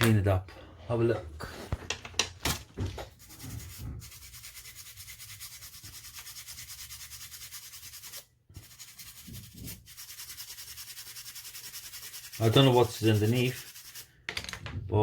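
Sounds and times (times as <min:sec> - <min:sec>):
brush scrubbing circuit board: 0:03.2 - 0:14.1.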